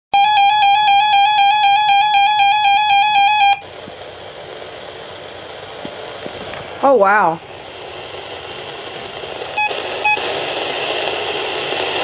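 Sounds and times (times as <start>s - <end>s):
weather radio alert tone: 0.2s - 3.7s
radio hiss: 3.3s - 12.0s.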